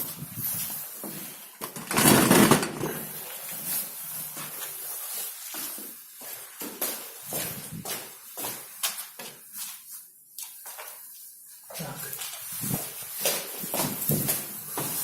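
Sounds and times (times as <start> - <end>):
footsteps and scuffing in stairwell: 0.0 - 15.0
loud scrape: 1.7 - 3.0.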